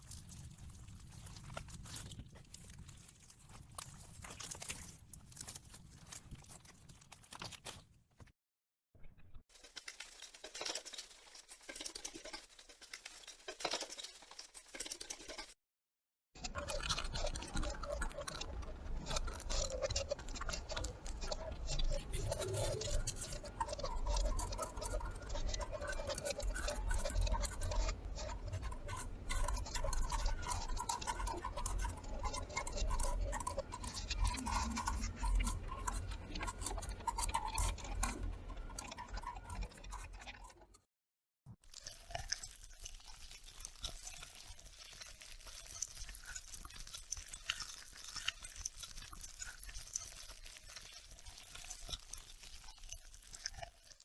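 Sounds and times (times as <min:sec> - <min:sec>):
insect wings fluttering: 0:41.6 - 0:54.0.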